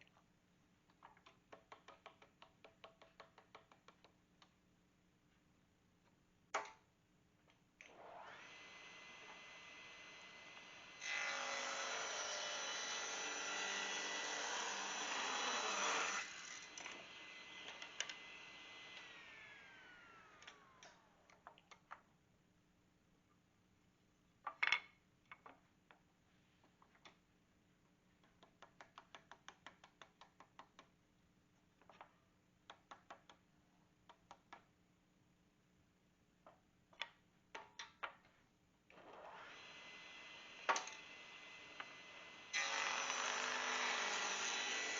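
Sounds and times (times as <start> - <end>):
table saw cutting wood: 7.9 - 21.1, 39.1 - 44.9
saw blade winding down whine: 7.9 - 21.2, 39.0 - 44.9.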